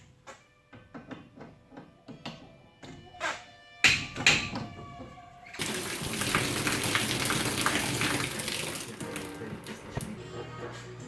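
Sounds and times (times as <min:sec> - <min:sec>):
shower water running: 0:05.6 - 0:10.2.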